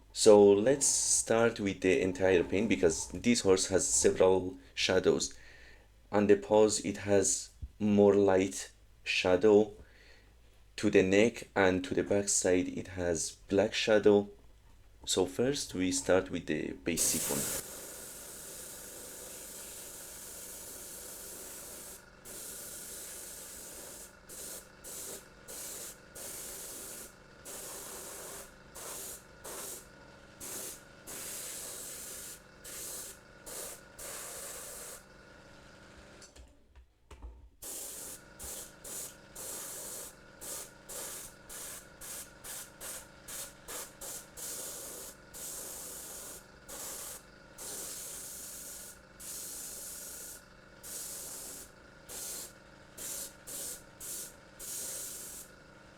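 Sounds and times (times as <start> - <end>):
airbrush spraying hiss: 17.0 - 35.1, 37.6 - 55.6.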